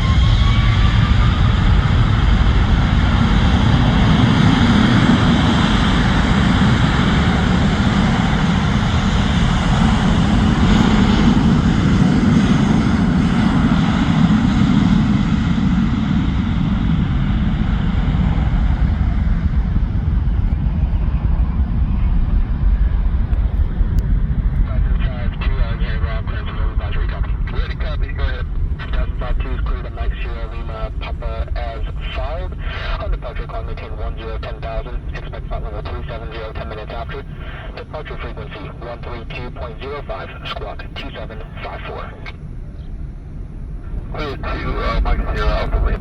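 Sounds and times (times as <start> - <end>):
jet engines roaring at takeoff: 0.0 - 46.0.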